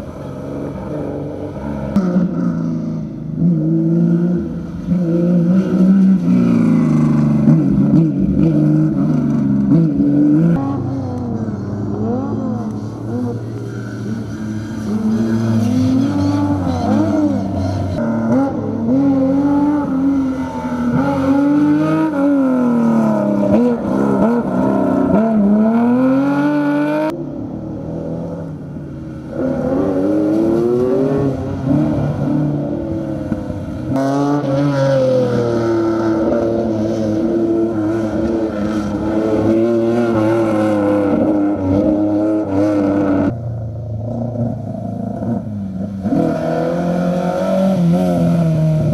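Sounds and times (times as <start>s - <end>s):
rally car engines revving: 0.0s - 48.9s.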